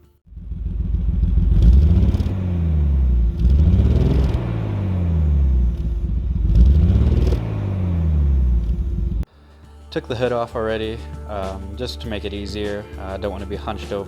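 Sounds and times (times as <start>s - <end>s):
car engine revving: 0.3s - 9.3s.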